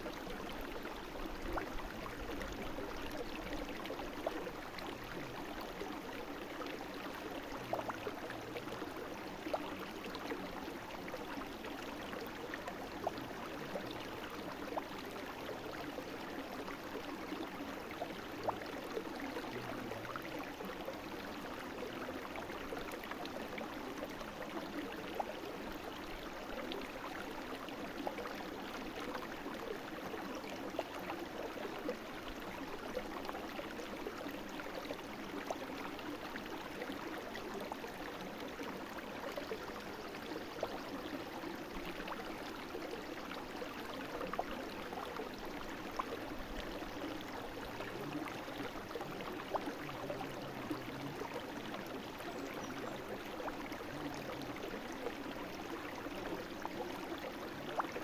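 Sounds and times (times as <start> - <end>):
brook flowing over stones: 0.0 - 58.0.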